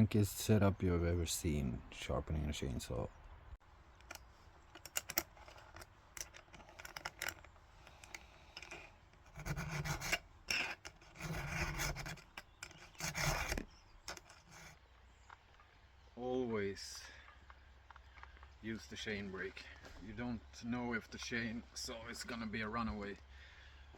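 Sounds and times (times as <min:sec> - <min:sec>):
file rasping on chainsaw chain: 0:04.1 - 0:14.8.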